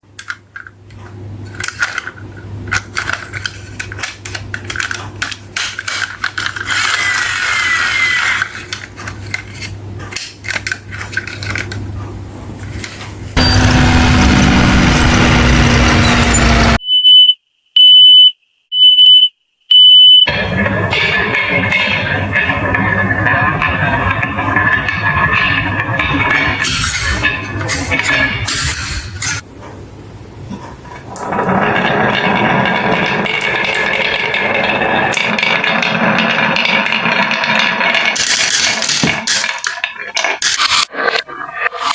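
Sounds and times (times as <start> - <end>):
toy pieces clicking and clattering: 1.5 - 11.9, 31.2 - 40.8.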